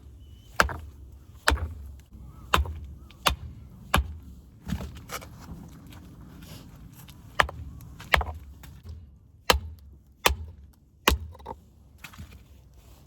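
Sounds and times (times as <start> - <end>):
axe chopping firewood: 0.5 - 5.2, 7.3 - 12.4.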